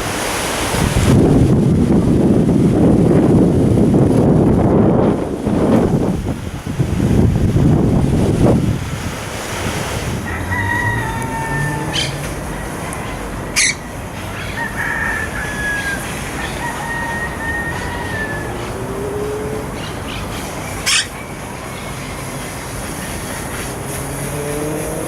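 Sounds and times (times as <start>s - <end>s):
rooster crowing: 10.2s - 19.7s.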